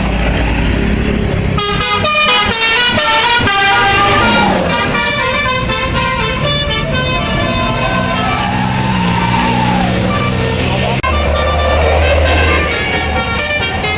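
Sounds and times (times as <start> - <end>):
bus engine rumbling: 0.0 - 13.9
multi-tone bus horn melody: 1.5 - 13.9.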